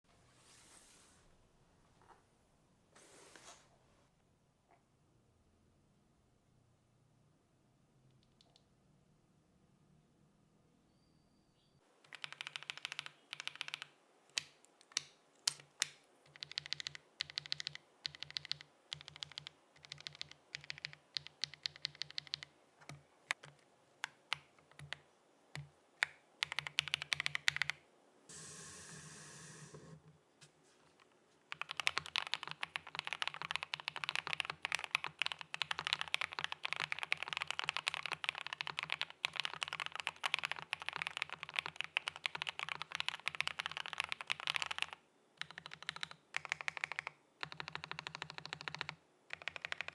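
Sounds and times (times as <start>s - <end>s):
mechanical keyboard typing: 12.1s - 25.0s, 25.6s - 27.8s, 31.5s - 49.9s.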